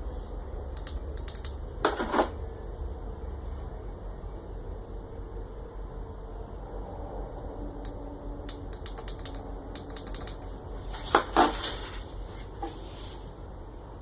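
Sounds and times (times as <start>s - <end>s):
small hardware clicks and rattles: 8.7s - 12.1s.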